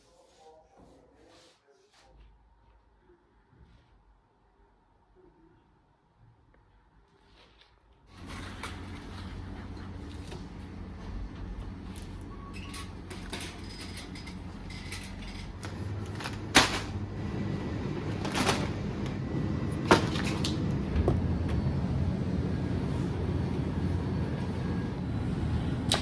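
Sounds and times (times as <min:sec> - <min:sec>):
steady low rumble: 0:20.6 - 0:25.9.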